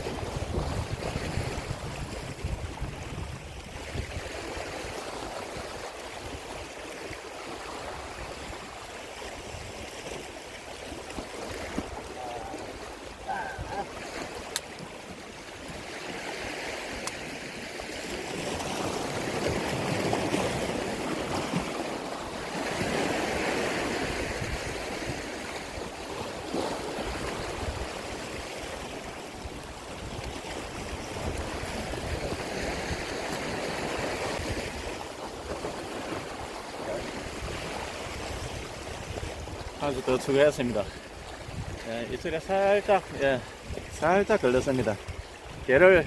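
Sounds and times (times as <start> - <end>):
waves washing against rocks: 0.0 - 46.0.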